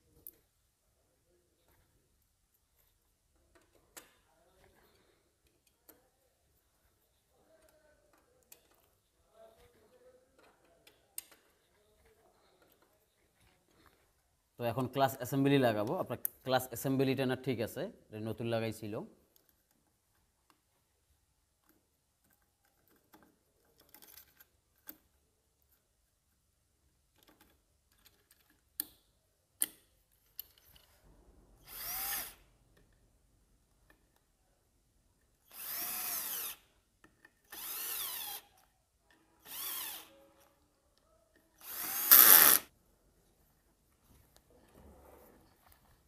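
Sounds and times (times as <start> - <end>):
metal parts clicking: 21.6 - 25.1
electric drill spinning: 31.7 - 32.4, 35.4 - 36.6, 37.5 - 38.5, 39.4 - 40.1, 41.6 - 42.7.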